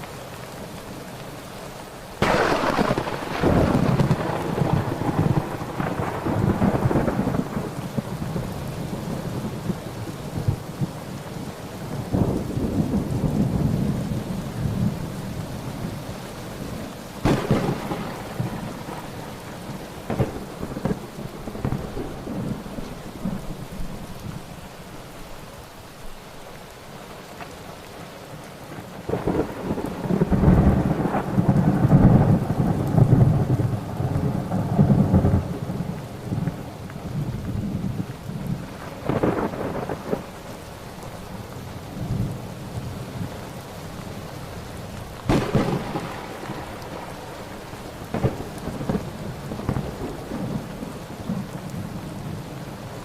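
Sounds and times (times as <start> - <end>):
steady rain: 0.0 - 53.0
sharp thunder crack: 2.2 - 8.1, 17.2 - 19.3, 45.3 - 47.0, 48.1 - 50.6
rolling thunder: 2.2 - 11.0, 17.2 - 24.1, 28.8 - 40.4, 45.2 - 52.4.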